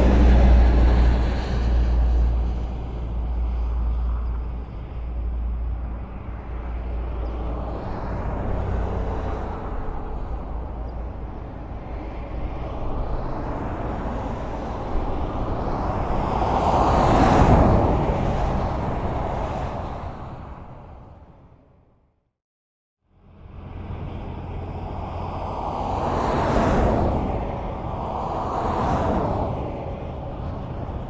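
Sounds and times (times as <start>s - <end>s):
vehicle passing close: 0.0s - 20.8s
highway traffic rumble: 0.0s - 22.3s, 23.0s - 31.0s.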